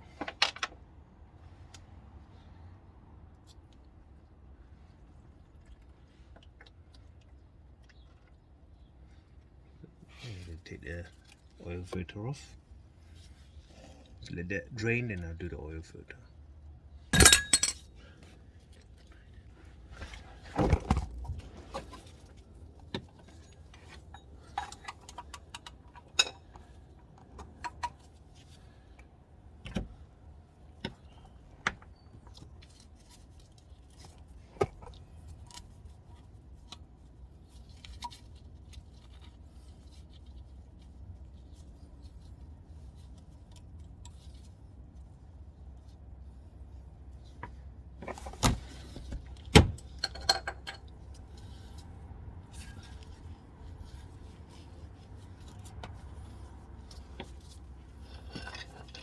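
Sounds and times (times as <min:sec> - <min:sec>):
metal hand tools clattering: 0:17.2 - 0:17.8.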